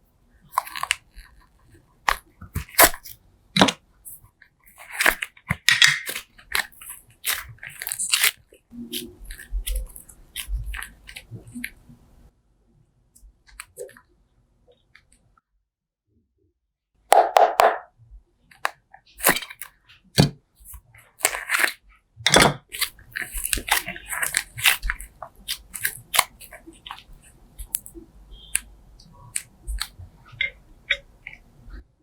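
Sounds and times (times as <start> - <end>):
slime squelching: 0.4 - 12.2, 18.5 - 31.9.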